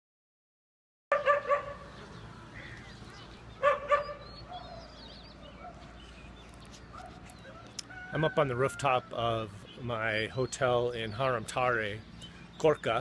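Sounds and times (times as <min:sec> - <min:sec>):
dog barking: 0:01.1 - 0:01.9, 0:03.6 - 0:06.0, 0:06.9 - 0:07.6.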